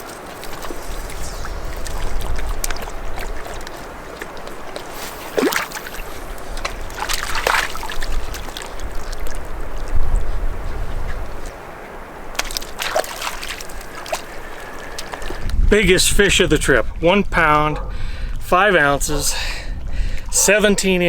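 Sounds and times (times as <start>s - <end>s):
wind rumble on microphone: 0.0s - 12.3s, 13.8s - 21.0s
water splashing and sloshing: 0.0s - 15.5s.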